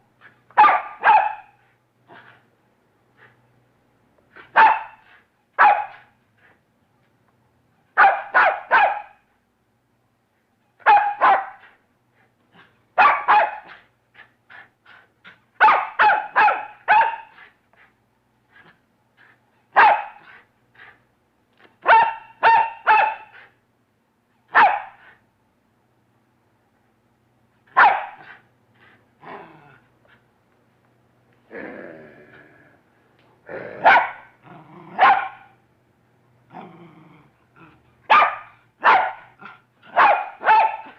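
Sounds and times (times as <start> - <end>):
canid barking: 33.8 - 34.3, 38.1 - 39.3, 39.9 - 40.9.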